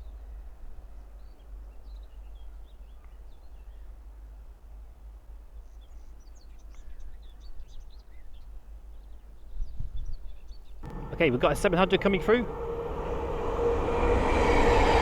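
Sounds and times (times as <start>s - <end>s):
steady low rumble: 10.8s - 15.0s.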